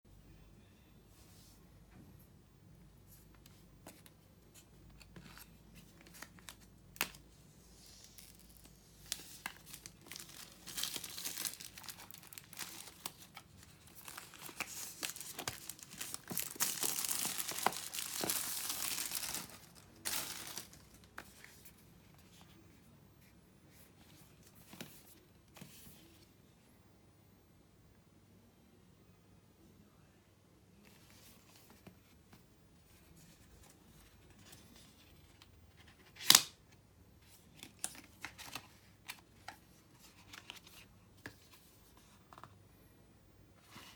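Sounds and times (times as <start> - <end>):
wrapping crinkling and tearing: 7.8 - 21.1.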